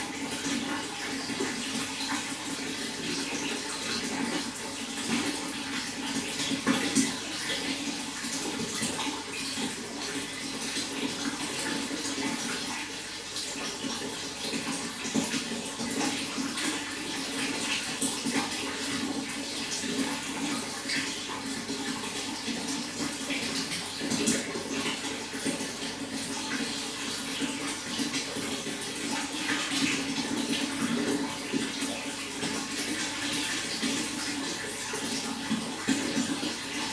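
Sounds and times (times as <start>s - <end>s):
running water splashing: 0.0s - 36.9s.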